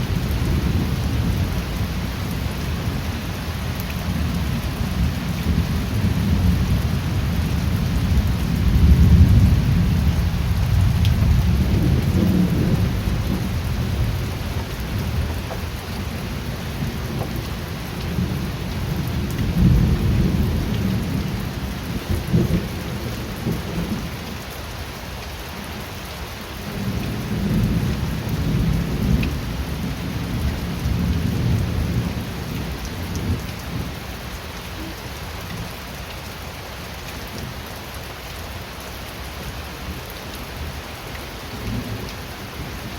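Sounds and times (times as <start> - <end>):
steady rain hissing: 0.0 - 42.9
low rolling thunder: 4.1 - 17.4, 18.0 - 24.1, 26.7 - 34.0.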